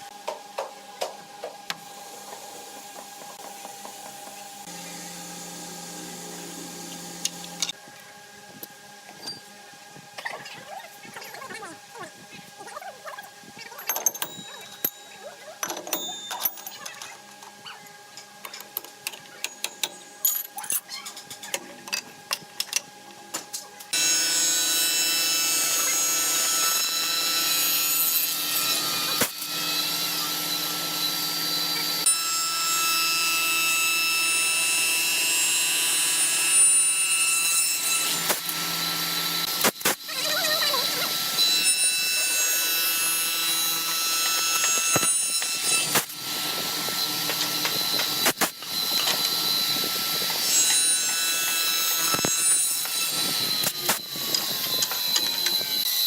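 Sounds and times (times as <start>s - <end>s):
power tool cutting wood: 1.7s - 7.8s, 23.9s - 56.0s.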